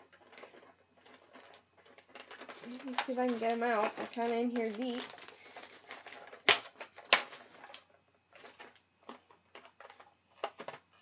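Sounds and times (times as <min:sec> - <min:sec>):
sharp plastic clacks: 0:00.1 - 0:10.8
plastic packaging clicks and taps: 0:01.4 - 0:10.8.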